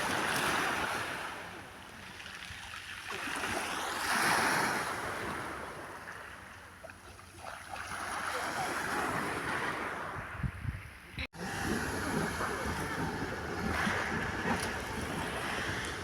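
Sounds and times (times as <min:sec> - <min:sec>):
sea waves washing onto shore: 0:11.4 - 0:16.0.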